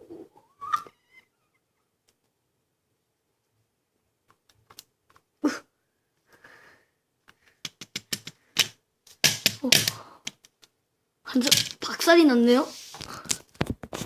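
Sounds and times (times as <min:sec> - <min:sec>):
toy cracking and shattering: 0:07.6 - 0:10.7, 0:11.4 - 0:11.9.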